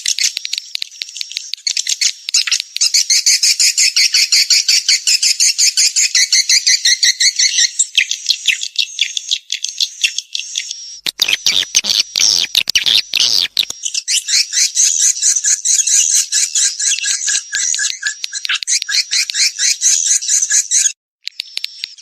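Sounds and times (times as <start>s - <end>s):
high buzzy bird chirps: 10.6s - 22.0s.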